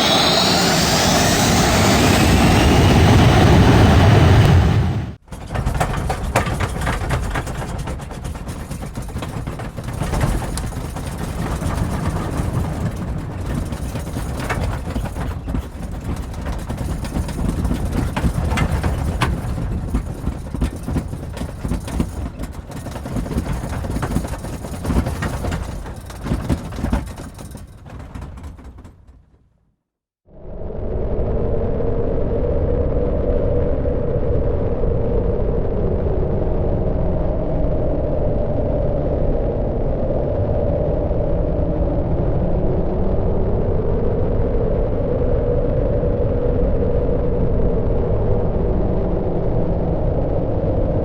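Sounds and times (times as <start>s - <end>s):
airframe low rumble: 0.0s - 28.9s
seats rattling and knocking: 5.2s - 29.6s.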